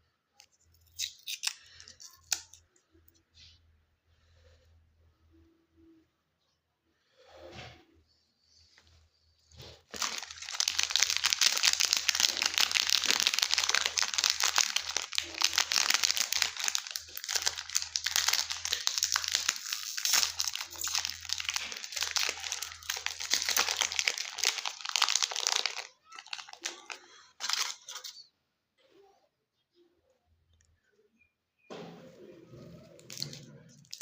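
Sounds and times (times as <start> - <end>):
candy wrappers crinkling: 0.4 - 2.6, 9.6 - 28.3, 33.0 - 34.0.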